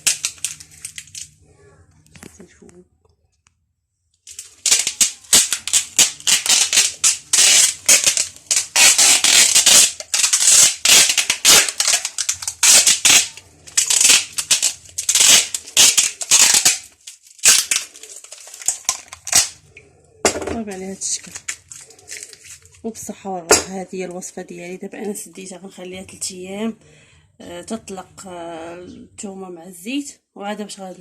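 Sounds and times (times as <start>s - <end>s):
wrapping rustling and crinkling: 0.0s - 1.4s, 4.2s - 19.8s, 20.7s - 22.9s.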